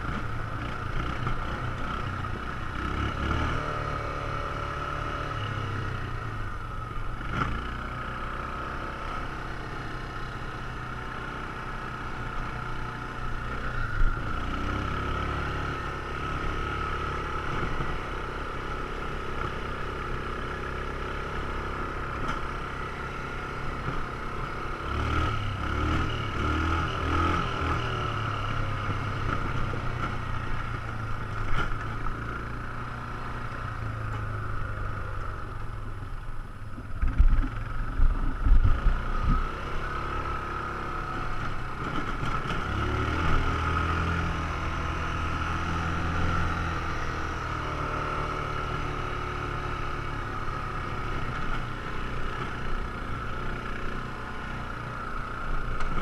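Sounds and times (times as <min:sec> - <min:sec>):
atv engine running: 0:00.0 - 0:56.0.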